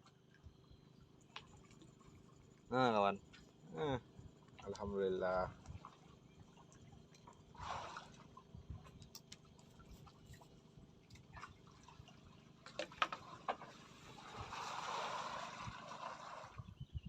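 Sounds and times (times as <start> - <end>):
water splashing: 4.5 - 10.4, 11.1 - 16.6
light clicks and taps: 9.0 - 10.0.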